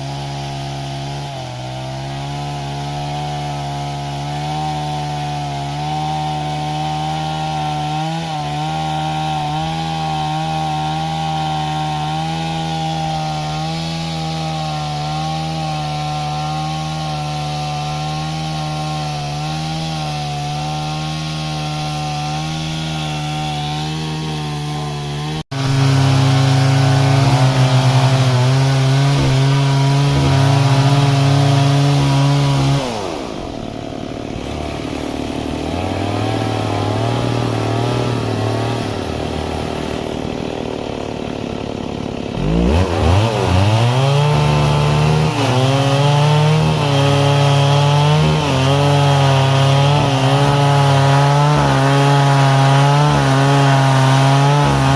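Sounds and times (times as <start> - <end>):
chainsaw cutting wood: 0.0 - 54.9.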